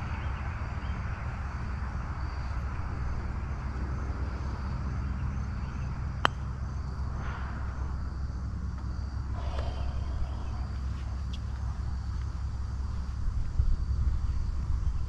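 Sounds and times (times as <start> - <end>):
low outdoor rumble: 0.0 - 15.0
golf club striking ball: 6.2 - 6.6.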